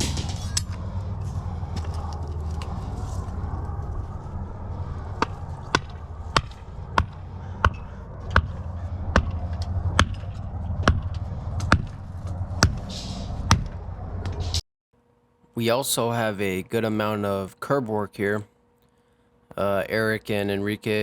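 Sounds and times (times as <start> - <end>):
hammer blows: 0.0 - 14.6
low engine drone: 0.0 - 14.6.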